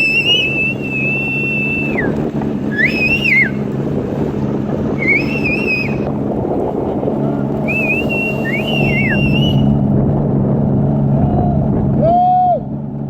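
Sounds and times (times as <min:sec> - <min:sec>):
high wavering whistles: 0:00.0 - 0:03.6, 0:05.0 - 0:06.1, 0:07.6 - 0:09.8
boat motor running: 0:00.0 - 0:13.0.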